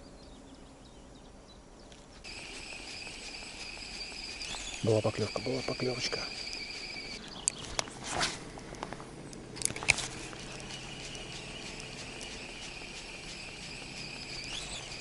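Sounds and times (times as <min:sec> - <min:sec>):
insects chirring: 0:02.2 - 0:07.6, 0:09.7 - 0:15.0
sharp clicks: 0:02.3 - 0:07.9, 0:08.8 - 0:15.0.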